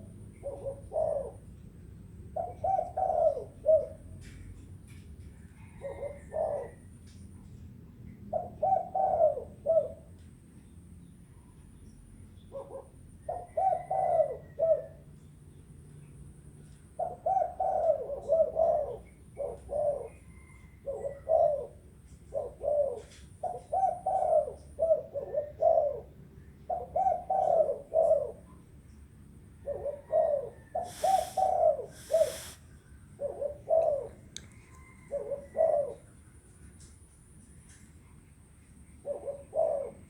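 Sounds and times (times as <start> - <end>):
dove cooing: 0.0 - 1.6, 2.3 - 4.4, 5.5 - 7.0, 8.3 - 10.2, 12.5 - 15.1, 16.9 - 28.6, 29.6 - 36.8, 39.0 - 40.0
brief hissy bursts: 30.9 - 32.6.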